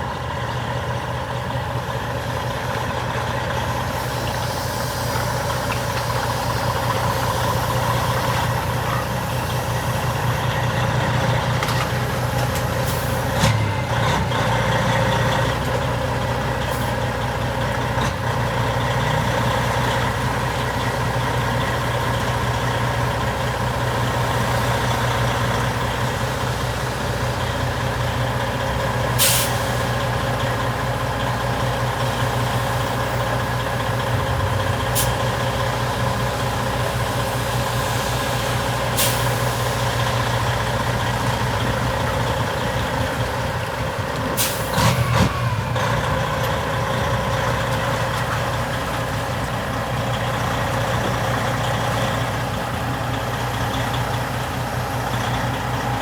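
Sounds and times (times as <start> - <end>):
diesel truck engine running: 0.0 - 56.0
air brake hisses: 3.9 - 7.9, 29.2 - 30.0, 37.0 - 40.2, 44.4 - 45.6.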